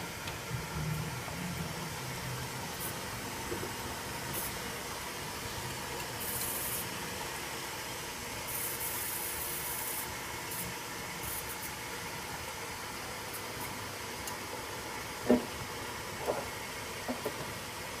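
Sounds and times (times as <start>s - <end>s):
washing machine humming: 0.0s - 18.0s
hissing water spray: 4.2s - 4.9s, 6.2s - 7.0s, 8.4s - 11.8s.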